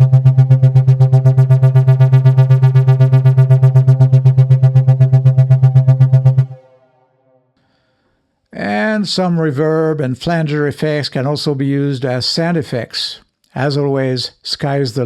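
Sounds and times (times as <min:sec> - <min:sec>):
pulsing distorted synth bass note: 0:00.0 - 0:07.6.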